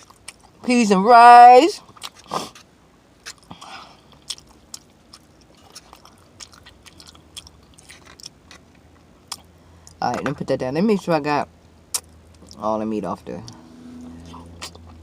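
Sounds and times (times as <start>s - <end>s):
person chewing and lip smacking: 0.0s - 0.6s, 1.8s - 10.0s, 11.9s - 12.6s, 14.3s - 15.0s.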